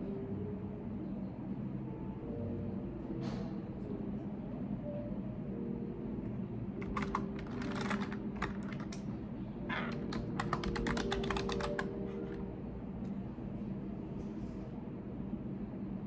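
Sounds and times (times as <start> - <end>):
steady low hum: 0.0 - 16.0
typing on keyboard: 6.8 - 12.4.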